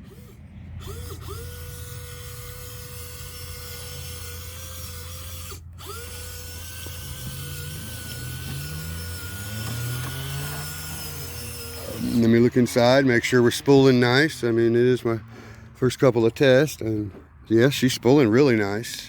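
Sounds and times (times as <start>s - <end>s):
winch motor whining: 0.0s - 17.3s
lower rising whine: 5.5s - 15.3s.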